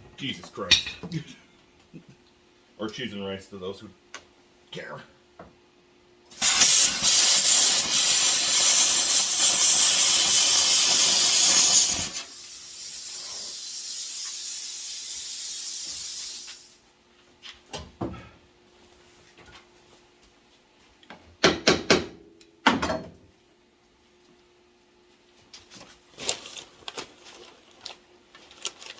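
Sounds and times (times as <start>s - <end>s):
air hiss: 6.3s - 16.8s
plasma cutter cutting steel: 6.3s - 16.8s.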